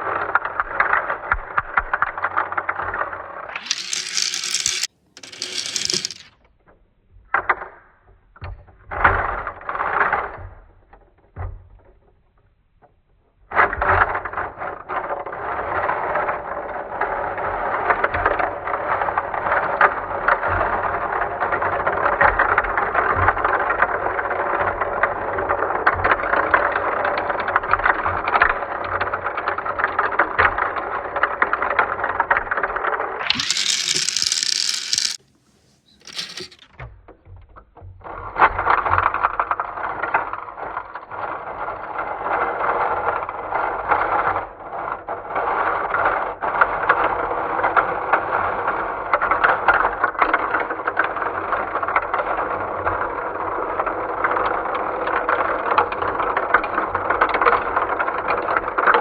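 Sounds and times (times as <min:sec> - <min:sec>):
balls clicking through marble run: 0:00.1 - 0:06.3, 0:15.7 - 0:36.8, 0:49.1 - 0:59.0.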